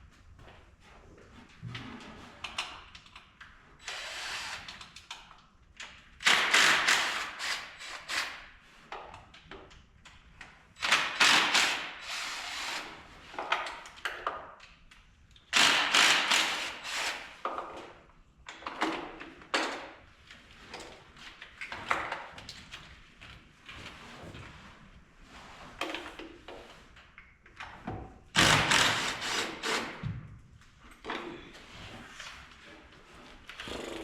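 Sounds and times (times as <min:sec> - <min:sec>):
knocks and clunks of handiwork: 0:27.5 - 0:31.7.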